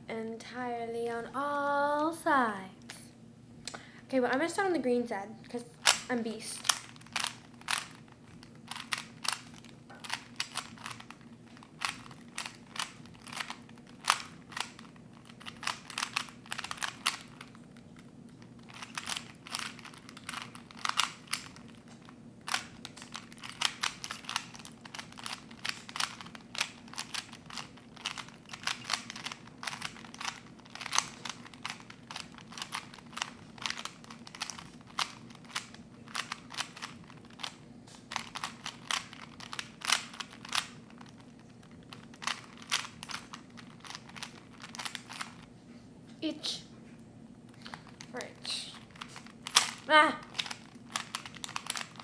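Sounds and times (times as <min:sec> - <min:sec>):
faint steady hum: 0:00.0 - 0:52.0
plastic puzzle cube clicking: 0:05.8 - 0:08.1, 0:08.7 - 0:17.6, 0:18.6 - 0:21.7, 0:22.5 - 0:41.2, 0:42.1 - 0:45.4, 0:48.8 - 0:52.0.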